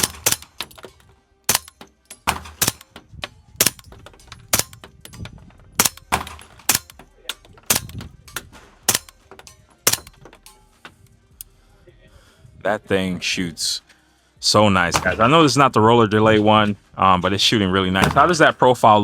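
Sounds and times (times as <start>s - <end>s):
suppressed pistol shots: 0.0s - 10.7s, 14.9s - 15.4s, 18.0s - 18.5s.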